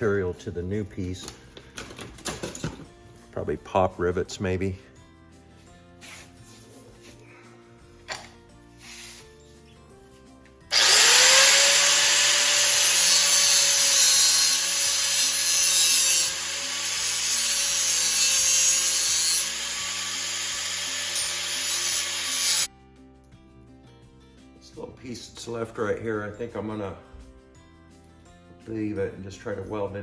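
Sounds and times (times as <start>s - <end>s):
electric grinder on sheet steel: 10.7s - 22.7s.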